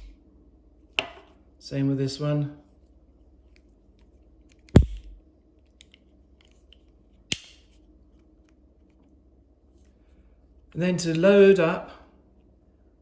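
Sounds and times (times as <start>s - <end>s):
dull knock: 4.8s - 5.2s
pistol hammer metallic clicks: 7.3s - 7.7s.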